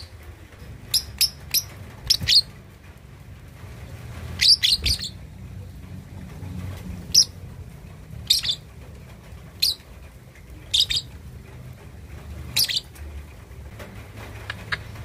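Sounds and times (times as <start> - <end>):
lovebird chirping: 0.9 - 2.5, 4.4 - 5.2, 8.2 - 8.6, 10.7 - 11.1, 12.6 - 12.9.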